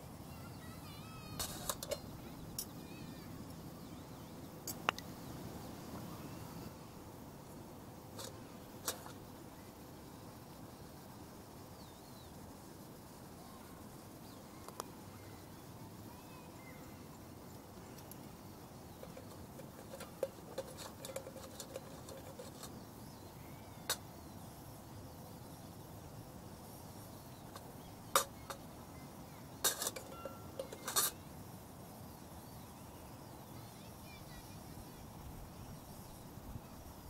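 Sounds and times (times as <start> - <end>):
campfire crackling: 0.0 - 15.1, 16.9 - 32.3.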